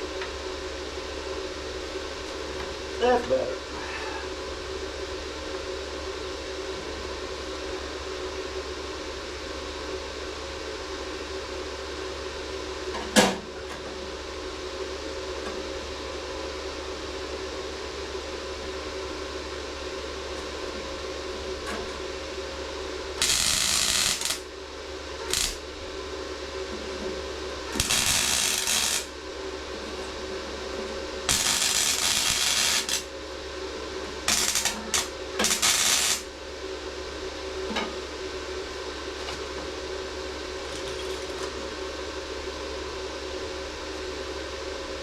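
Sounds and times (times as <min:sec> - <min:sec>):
electrical hum: 0:13.5 - 0:45.0
welder arc crackle: 0:23.2 - 0:24.5, 0:25.2 - 0:25.7, 0:27.7 - 0:29.2, 0:31.3 - 0:33.1, 0:34.3 - 0:36.3.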